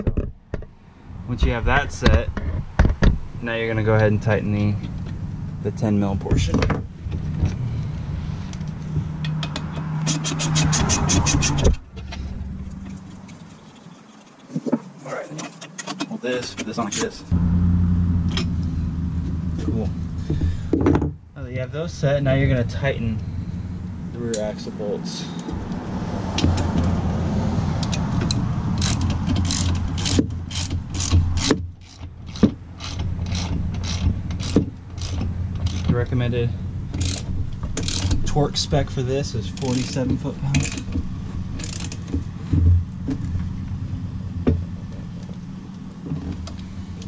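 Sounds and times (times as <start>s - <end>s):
steady low hum: 3.2s - 9.6s, 16.8s - 26.2s
ratchet wrench clicking: 27.8s - 35.9s, 37.0s - 38.2s, 41.6s - 42.0s.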